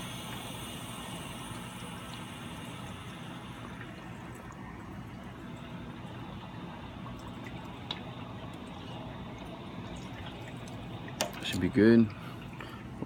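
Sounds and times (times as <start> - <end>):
air escaping from valve: 0.0 - 4.0
water rushing into tank: 0.0 - 13.0.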